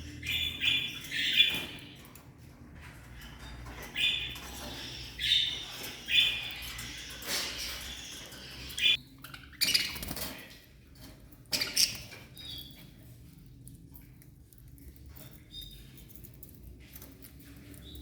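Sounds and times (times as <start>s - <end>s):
cage birds chirping and squawking: 0.0s - 18.0s.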